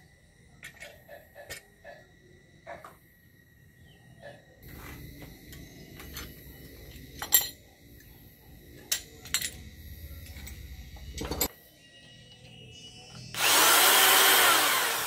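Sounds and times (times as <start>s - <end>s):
metal clinking against metal: 7.0s - 7.7s, 8.8s - 11.5s.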